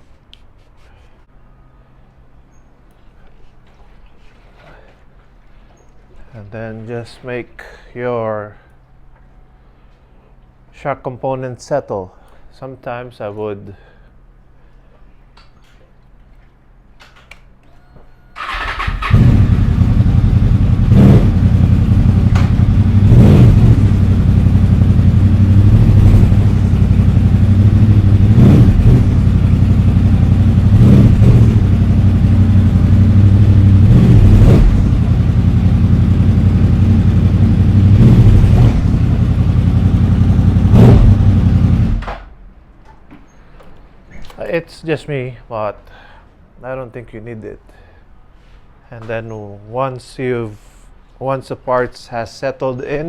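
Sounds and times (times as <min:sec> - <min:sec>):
motorcycle engine running loudly: 0:19.0 - 0:42.1.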